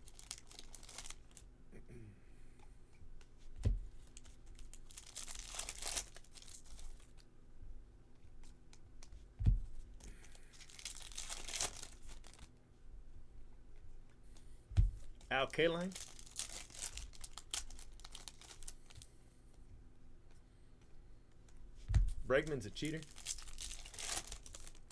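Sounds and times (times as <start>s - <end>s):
wrappers tearing and crinkling: 0.0s - 1.5s, 4.0s - 7.2s, 10.0s - 12.5s, 15.8s - 19.0s, 22.7s - 24.9s
dull thump: 3.6s - 4.0s, 9.4s - 9.8s, 14.7s - 15.1s, 21.8s - 22.3s.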